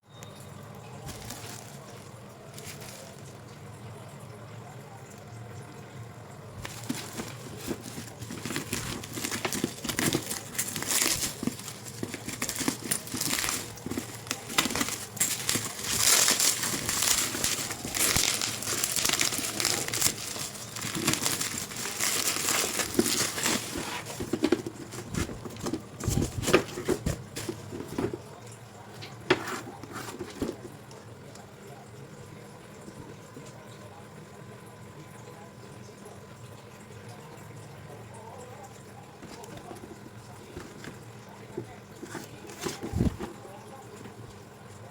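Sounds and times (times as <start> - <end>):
packaging crinkling and rustling: 0.9 - 3.7, 6.5 - 31.0, 39.2 - 44.3.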